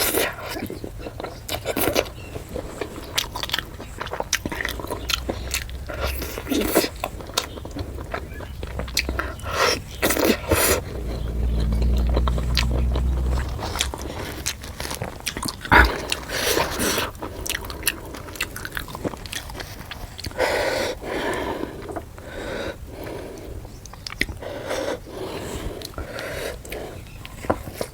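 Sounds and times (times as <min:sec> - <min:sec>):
biting and chewing food: 0:00.0 - 0:20.4
low rumble: 0:04.3 - 0:16.5.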